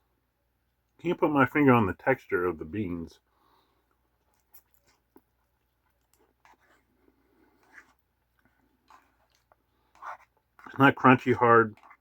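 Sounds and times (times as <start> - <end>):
soft chewing: 3.4 - 12.0.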